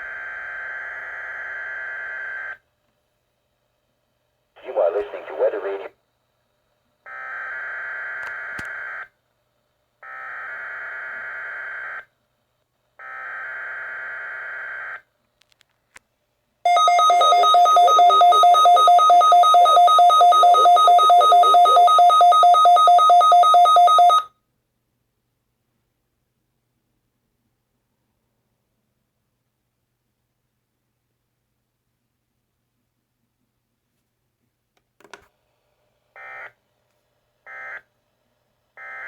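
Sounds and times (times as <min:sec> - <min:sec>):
pulsing two-tone alert signal: 0:16.7 - 0:24.2.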